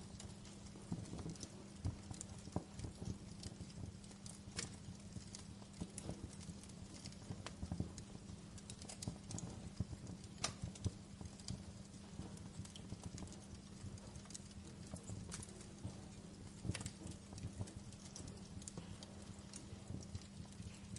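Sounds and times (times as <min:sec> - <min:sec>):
low fire rumble: 0:00.0 - 0:20.9
wood fire crackling: 0:00.0 - 0:20.9.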